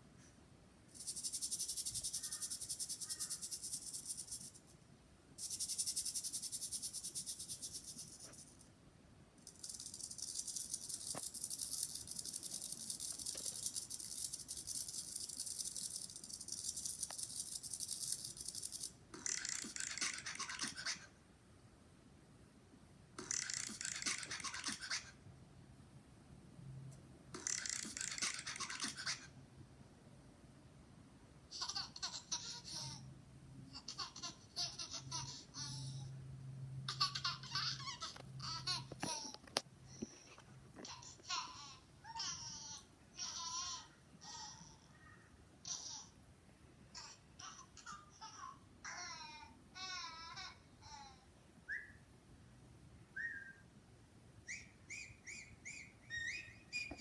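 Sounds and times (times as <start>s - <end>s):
high-pitched buzzing rattle: 0.9s - 4.7s, 5.4s - 8.7s, 9.4s - 19.4s.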